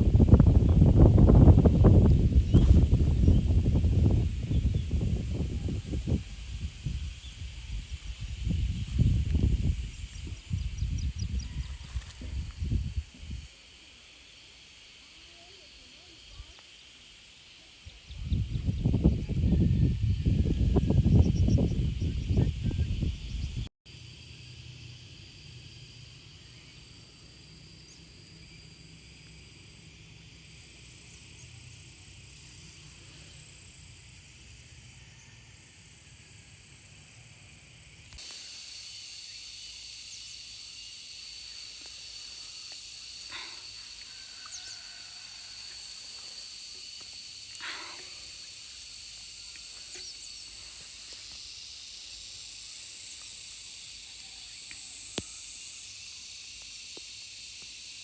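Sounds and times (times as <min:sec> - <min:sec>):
high-pitched insect drone: 0:00.0 - 0:58.0.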